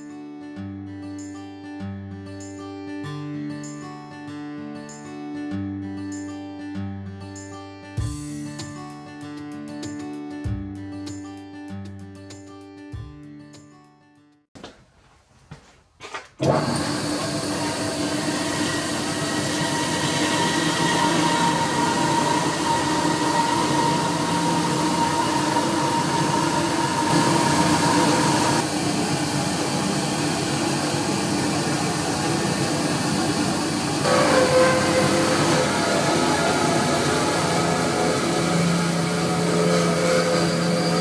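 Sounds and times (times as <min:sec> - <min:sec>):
workshop machine whining hum: 0:16.4 - 0:41.0.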